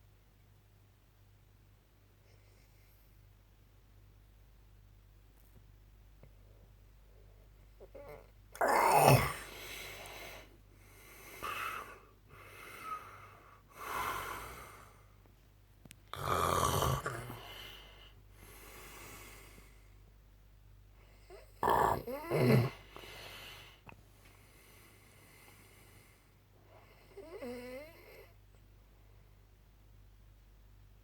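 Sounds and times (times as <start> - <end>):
quiet breaths: 1.8 - 4.2, 5.4 - 8.6, 9.3 - 29.8
man snoring: 8.0 - 9.8, 16.2 - 17.6, 21.6 - 22.8.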